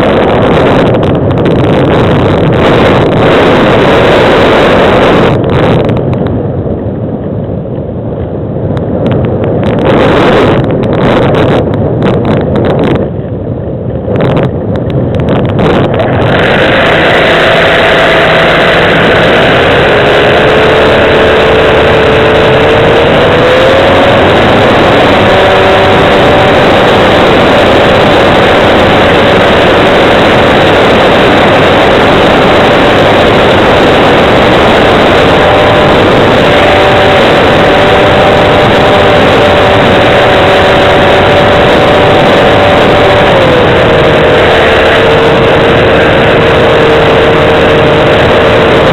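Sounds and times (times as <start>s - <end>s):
wind rushing over microphone: 0.0s - 48.9s
model plane motor running: 16.0s - 48.9s.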